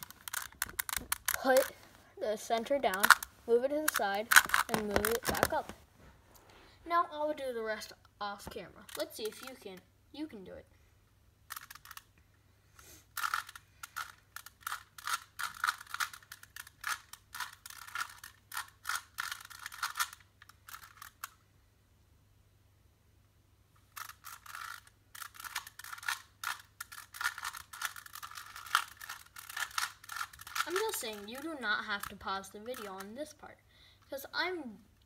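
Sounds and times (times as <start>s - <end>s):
puzzle cube clicking: 0.0s - 1.8s, 2.5s - 5.8s, 8.8s - 9.8s, 11.5s - 12.1s, 13.1s - 21.4s, 23.9s - 33.4s.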